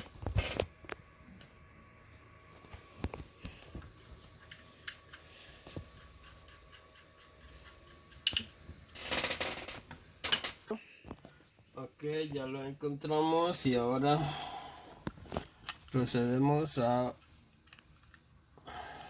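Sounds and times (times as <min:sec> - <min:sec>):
small parts and screwdriver clicking: 0:05.9 - 0:10.6.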